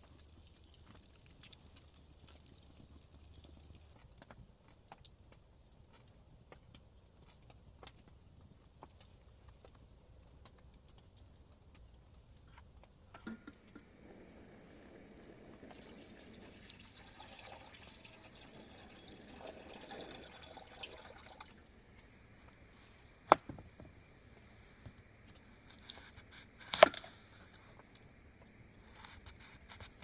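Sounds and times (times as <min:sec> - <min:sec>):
liquid pouring: 0:00.0 - 0:04.0, 0:13.2 - 0:30.0.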